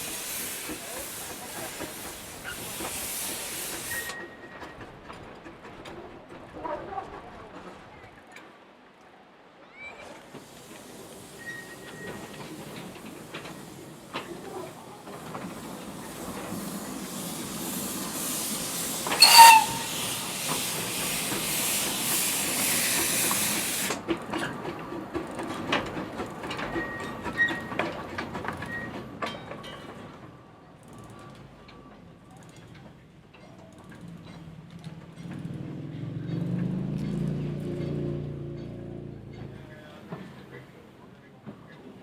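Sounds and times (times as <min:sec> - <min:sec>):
steam locomotive venting steam: 0:00.0 - 0:05.1, 0:09.8 - 0:30.2
steam whistle blast: 0:18.2 - 0:21.1.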